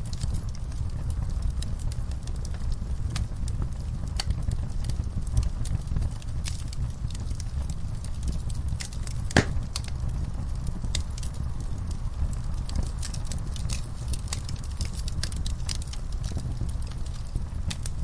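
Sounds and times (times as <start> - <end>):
low rumble of burning logs: 0.0 - 18.0
wood fire crackling and popping: 0.0 - 18.0.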